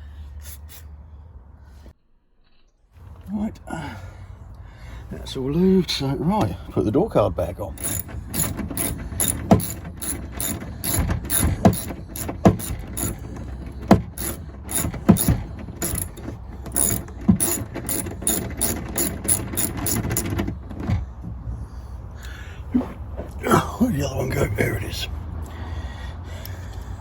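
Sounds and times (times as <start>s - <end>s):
ratchet-like clicking: 7.7s - 20.4s
loud knocks: 7.8s - 13.2s.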